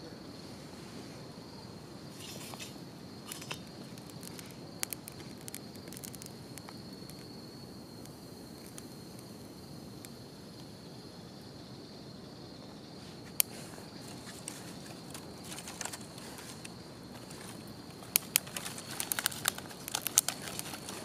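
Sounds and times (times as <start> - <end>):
insect trill: 0.0 - 21.0
wood crackling and popping: 2.2 - 10.8, 13.2 - 21.0.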